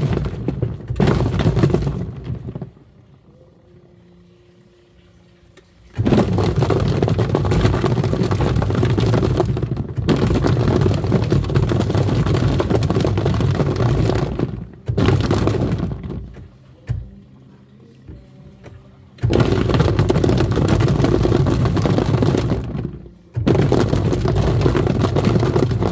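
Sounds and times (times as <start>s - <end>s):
plastic toys clattering in tub: 0.0s - 2.8s, 6.0s - 17.0s, 19.2s - 25.9s
washing machine churning water: 0.0s - 3.3s, 4.2s - 25.9s.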